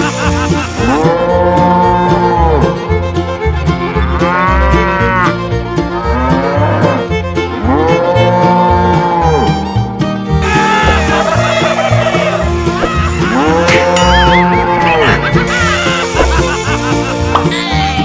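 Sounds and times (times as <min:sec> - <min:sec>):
cattle mooing: 0:00.8 - 0:02.7, 0:04.0 - 0:07.0, 0:07.6 - 0:09.4, 0:13.1 - 0:15.2.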